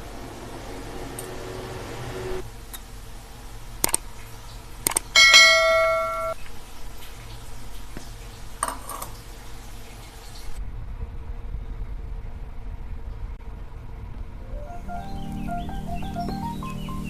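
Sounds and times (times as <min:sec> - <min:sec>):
metal vessel struck and ringing: 0:05.2 - 0:06.4.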